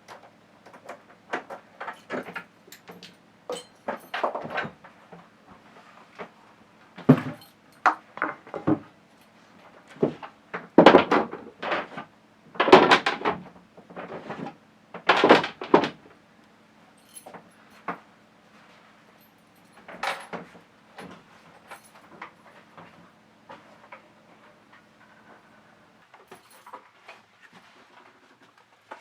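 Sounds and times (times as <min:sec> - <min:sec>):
hard objects knocking and rattling: 0:12.6 - 0:16.0.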